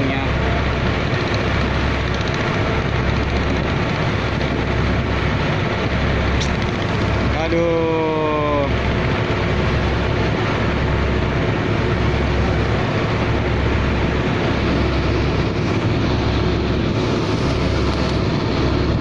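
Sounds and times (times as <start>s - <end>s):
boat engine rumbling: 0.0s - 19.0s.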